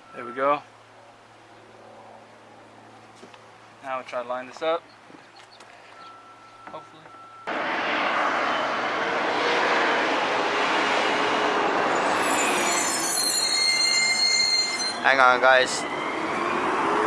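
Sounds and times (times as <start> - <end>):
heavy truck running: 7.1 - 17.0
high thin squealing: 11.4 - 16.7.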